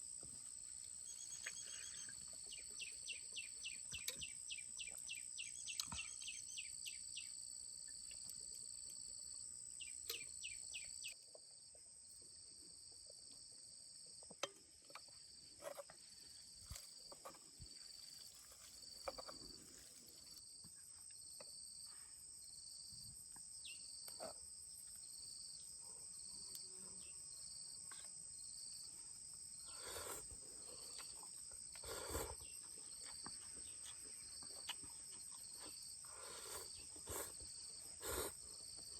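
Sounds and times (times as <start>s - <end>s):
insects trilling: 0.0s - 11.2s, 13.8s - 38.9s
bird chirping: 1.0s - 7.4s, 9.8s - 11.2s.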